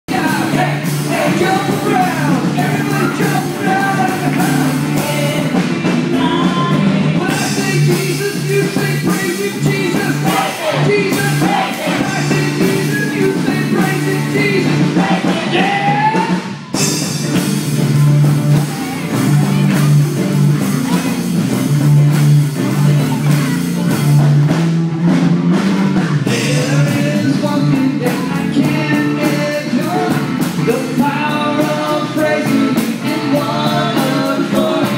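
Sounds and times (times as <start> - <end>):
lead singer: 0.1 - 16.6, 26.2 - 34.9
worship band playing: 0.1 - 34.9.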